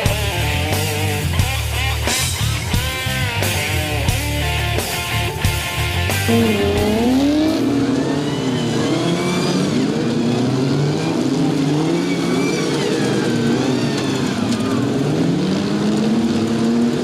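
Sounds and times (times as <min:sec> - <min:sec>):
rock music: 0:00.0 - 0:12.0
car engines revving: 0:00.0 - 0:17.0.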